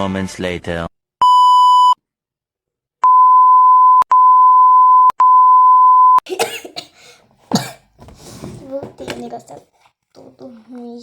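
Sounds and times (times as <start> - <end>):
electronic censor beeps: 1.2 - 2.0, 3.0 - 6.2.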